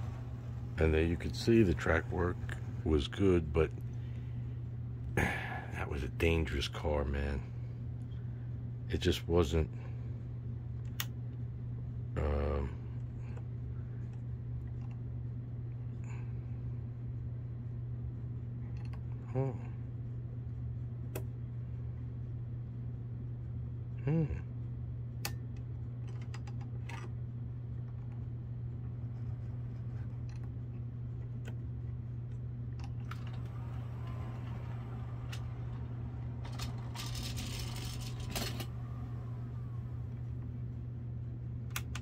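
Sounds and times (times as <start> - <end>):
model train cars rattling: 0.0 - 4.4, 32.9 - 40.6
steady low hum: 0.0 - 42.0
person saying hm: 19.2 - 19.8, 24.0 - 24.5.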